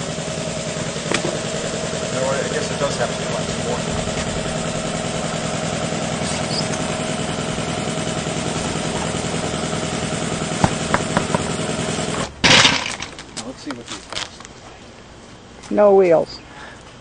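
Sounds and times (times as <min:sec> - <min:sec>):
motor running steadily: 0:00.0 - 0:13.2.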